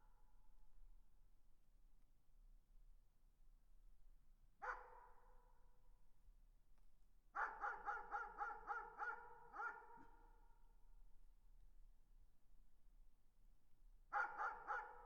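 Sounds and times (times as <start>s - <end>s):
distant dog barking: 7.4s - 10.1s, 14.2s - 15.0s.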